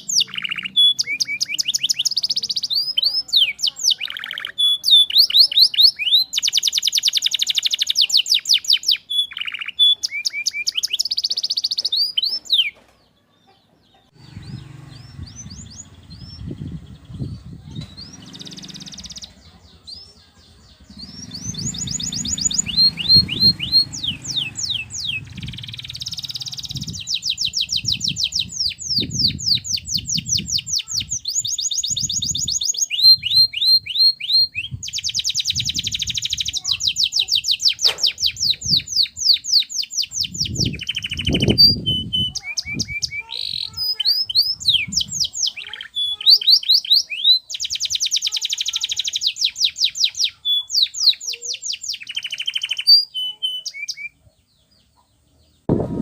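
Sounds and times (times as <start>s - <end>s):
canary singing trills: 0.0s - 56.0s
low thumps: 55.7s - 56.0s.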